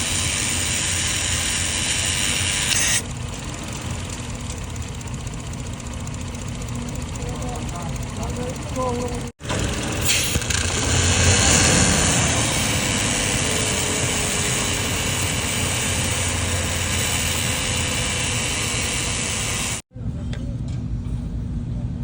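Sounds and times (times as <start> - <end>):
car engine idling: 3.0 - 19.2.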